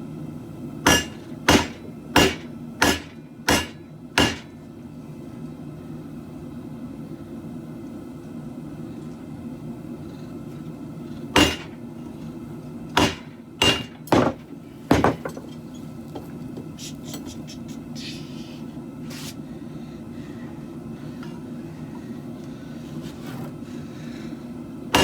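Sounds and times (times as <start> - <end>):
low background hum: 0.0 - 25.0
hammer striking steel on anvil: 0.9 - 4.5, 11.4 - 11.8, 13.0 - 15.4.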